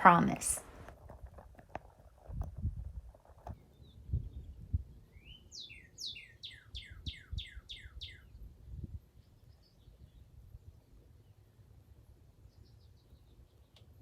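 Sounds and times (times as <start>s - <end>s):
songbird singing: 3.4s - 11.7s, 12.3s - 14.0s.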